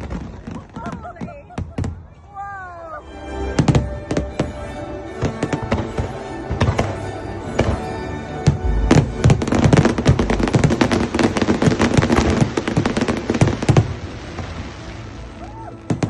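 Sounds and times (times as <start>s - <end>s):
fireworks bursts and cracks: 0.0s - 2.0s, 5.2s - 16.0s
music: 2.1s - 16.0s.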